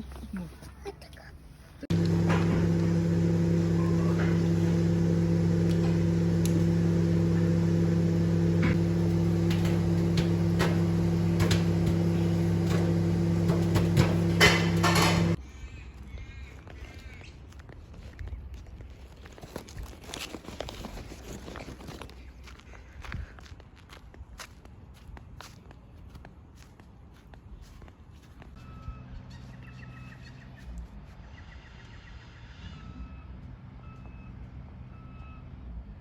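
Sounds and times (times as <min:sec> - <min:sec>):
clicks and knocks: 0:01.9 - 0:15.4
loud electrical hum: 0:01.9 - 0:15.4.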